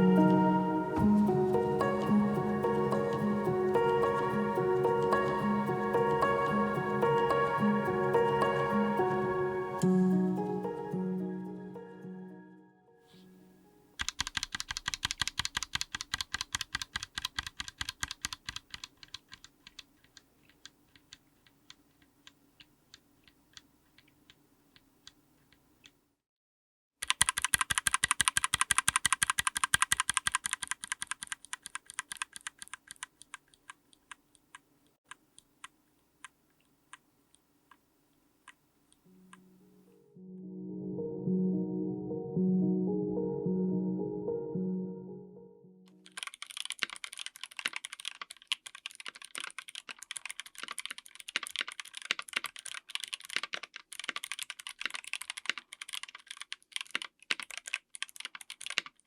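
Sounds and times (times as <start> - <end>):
music: 0.0 - 13.9, 39.1 - 46.0
mechanical keyboard typing: 14.0 - 25.2, 27.0 - 36.4, 46.0 - 59.0.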